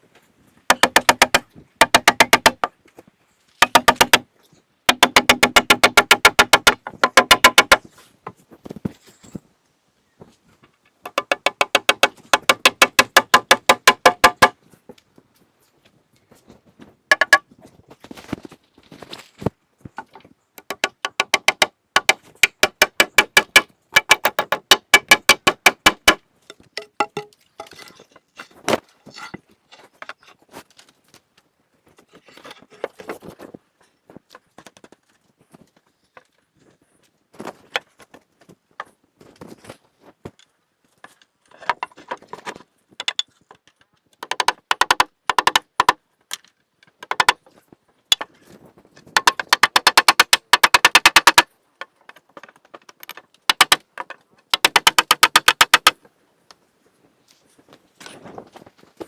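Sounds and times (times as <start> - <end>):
sharp ringing knocks: 0.7 - 2.7, 3.6 - 4.2, 4.9 - 7.8, 11.1 - 14.5, 17.1 - 17.4, 20.7 - 26.2.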